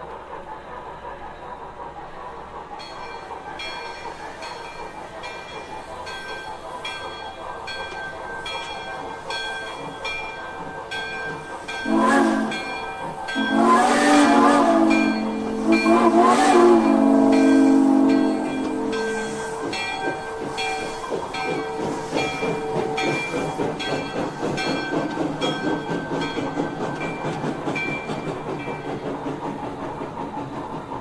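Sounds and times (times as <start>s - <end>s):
steam locomotive chuffing: 0.0s - 31.0s
steam whistle blasts: 11.8s - 12.8s, 13.4s - 20.6s.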